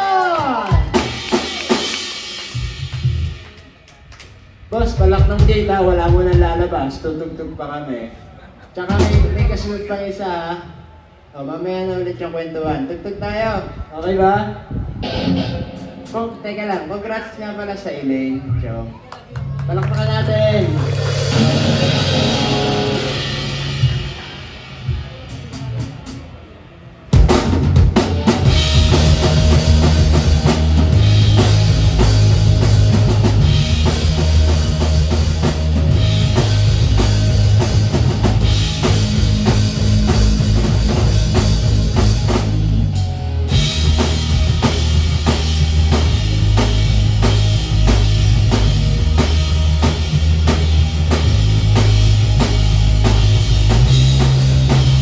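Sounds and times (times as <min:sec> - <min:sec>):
live rock band playing: 0:00.0 - 0:03.6, 0:08.9 - 0:09.7, 0:15.0 - 0:16.4, 0:19.4 - 0:26.2, 0:27.1 - 0:55.0
crowd applauding: 0:00.0 - 0:04.4, 0:19.0 - 0:23.8.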